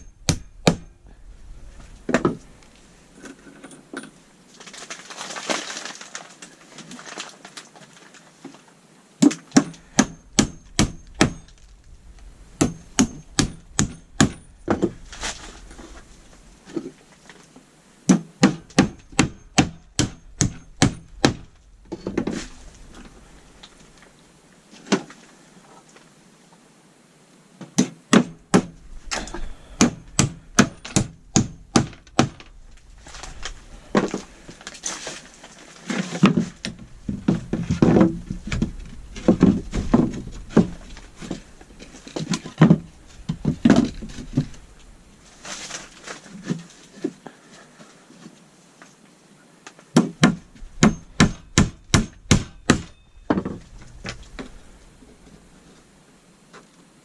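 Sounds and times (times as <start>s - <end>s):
wooden knocks and thuds: 2.1s - 2.5s, 9.2s - 11.7s, 12.6s - 15.1s, 18.1s - 22.6s, 36.0s - 41.5s, 42.1s - 44.6s, 49.9s - 54.6s
hammer driving nails into wood: 29.8s - 32.5s, 50.0s - 53.0s.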